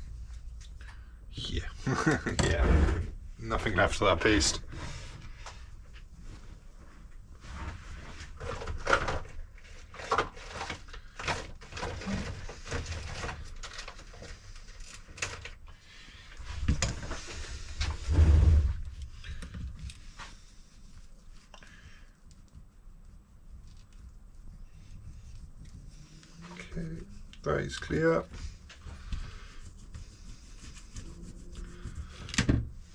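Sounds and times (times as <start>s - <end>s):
scraping and rubbing thermal paste: 15.9s - 32.9s.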